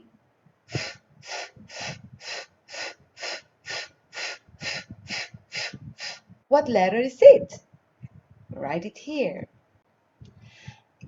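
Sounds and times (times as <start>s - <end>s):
woman making breathy f sounds: 0.7s - 6.3s.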